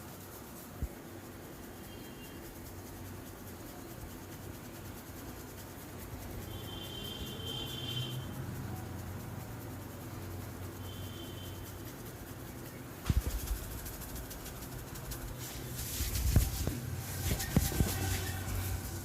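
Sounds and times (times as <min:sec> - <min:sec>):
steady low hum: 0:00.0 - 0:19.0
hands rubbing oiled skin: 0:12.4 - 0:19.0.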